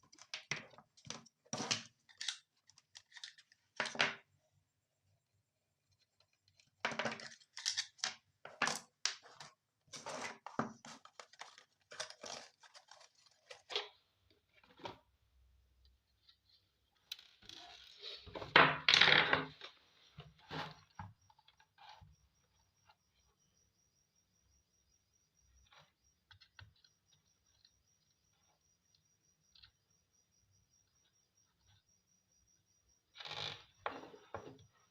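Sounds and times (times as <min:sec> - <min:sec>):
small hard objects clicking and scraping: 0:00.0 - 0:04.1, 0:06.2 - 0:13.9.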